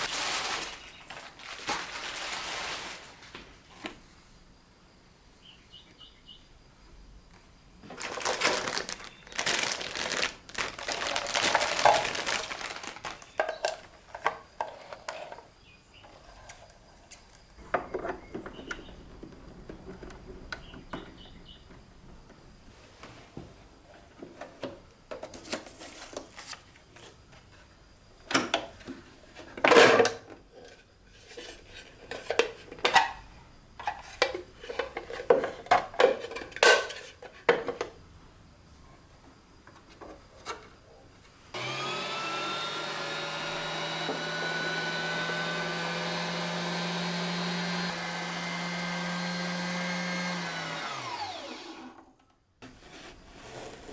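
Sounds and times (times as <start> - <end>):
objects being handled: 7.8 - 21.2
small electric motor running: 41.6 - 52.0.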